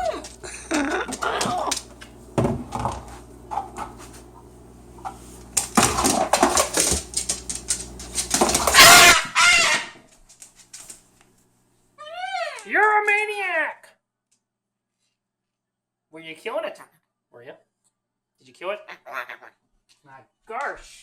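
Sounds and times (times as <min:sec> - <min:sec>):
cockatoo squawk: 0:08.7 - 0:10.0.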